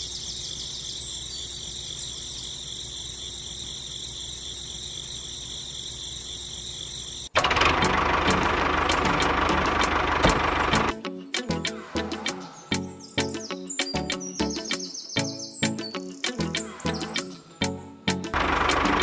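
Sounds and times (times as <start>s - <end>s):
insects chirring: 0.0s - 7.4s.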